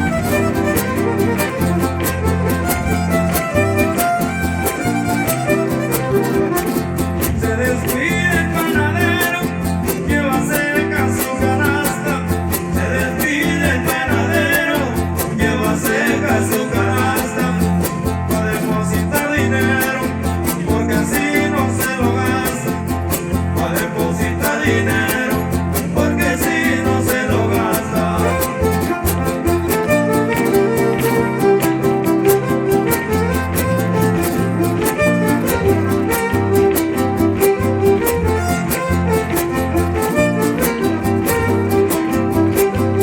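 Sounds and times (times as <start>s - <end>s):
violin melody: 0.0s - 9.1s, 28.0s - 43.0s
guitars strumming: 0.0s - 43.0s.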